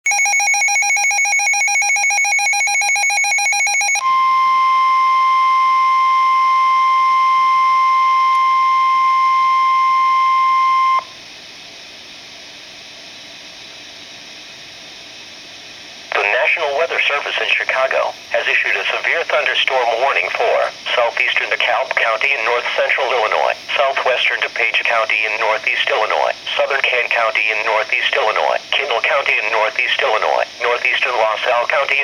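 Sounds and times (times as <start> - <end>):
steady warning alarm tone: 0.1 - 11.2
radio hiss: 16.1 - 32.0.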